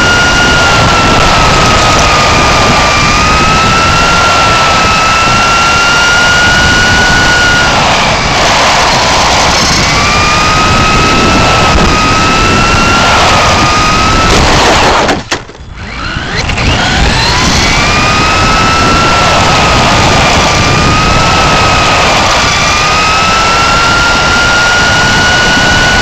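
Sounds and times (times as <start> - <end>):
electric motor whine: 0.0 - 26.0
tyre and wind rumble: 0.0 - 26.0.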